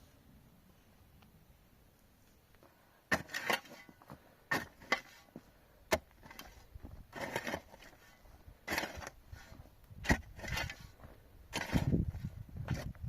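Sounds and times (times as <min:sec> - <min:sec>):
scraping: 0:03.1 - 0:13.0.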